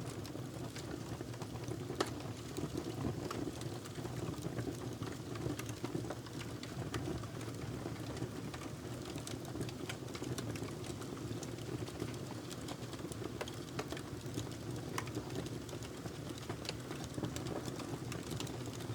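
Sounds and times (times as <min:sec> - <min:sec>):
wood fire crackling: 0:05.0 - 0:18.9.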